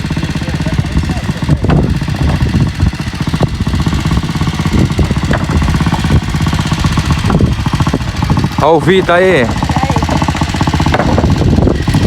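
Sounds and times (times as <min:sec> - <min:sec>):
motorcycle engine chugging: 0:00.0 - 0:12.0
short knocks: 0:10.8 - 0:11.3.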